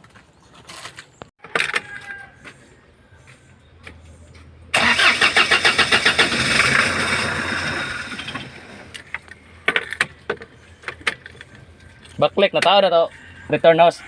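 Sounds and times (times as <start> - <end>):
diesel engine starting with clatter: 4.7 - 9.1.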